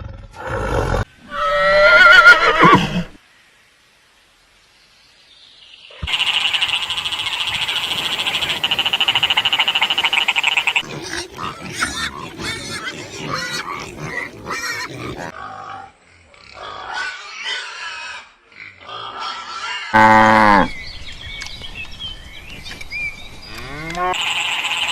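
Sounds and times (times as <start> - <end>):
animal pulsing trill and croaking: 6.0 - 17.0.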